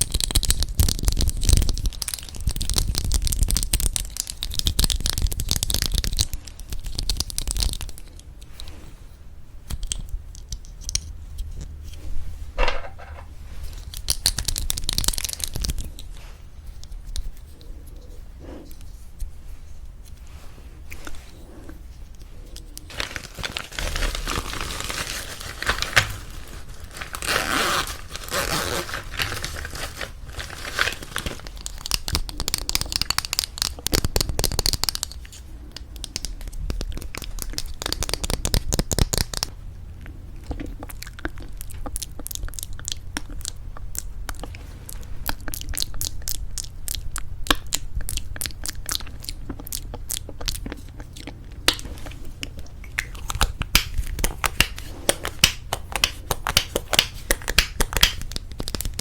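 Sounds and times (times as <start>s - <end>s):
crinkly rustling: 11.8s - 35.7s.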